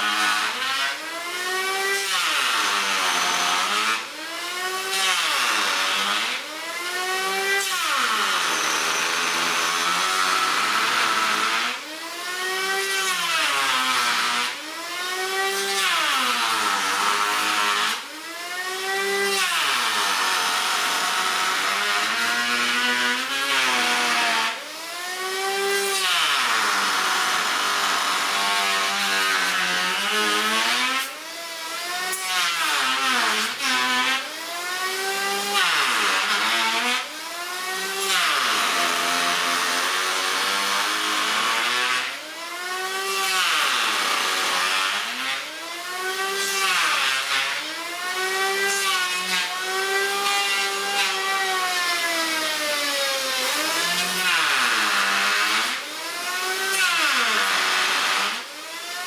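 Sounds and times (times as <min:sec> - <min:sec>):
power tool motor whining: 0:24.8 - 0:59.0.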